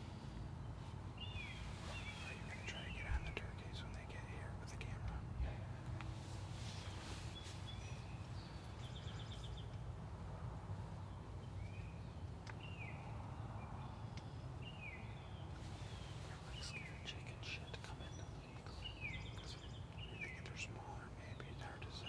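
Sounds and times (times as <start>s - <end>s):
low outdoor rumble: 0.0s - 22.0s
small birds chirping: 0.0s - 22.0s.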